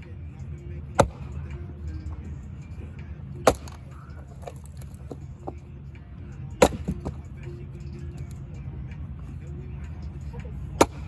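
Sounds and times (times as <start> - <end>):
axe striking wood: 1.0 - 1.5, 3.4 - 5.2, 6.6 - 7.3, 10.8 - 11.0.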